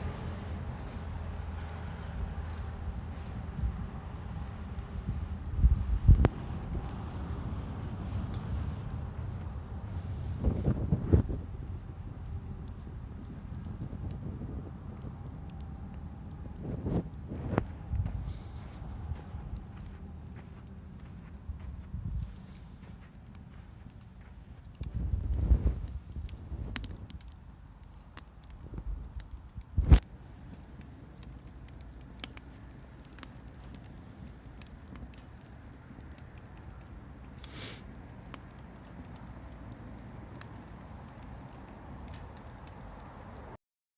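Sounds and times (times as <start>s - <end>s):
campfire crackling and popping: 0.0s - 43.6s
short hiss: 37.4s - 37.9s.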